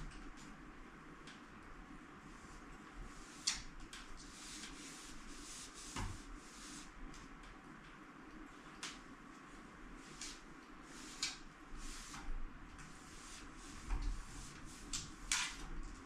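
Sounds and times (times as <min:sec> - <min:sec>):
rubbing strokes on fan blades: 0:02.2 - 0:07.4, 0:08.6 - 0:16.0.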